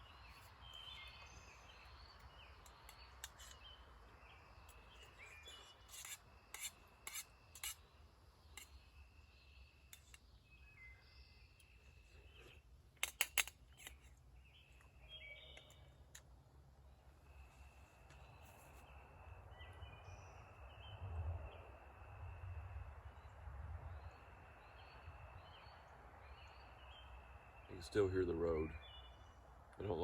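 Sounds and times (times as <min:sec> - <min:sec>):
songbirds chirping: 0:00.0 - 0:30.0.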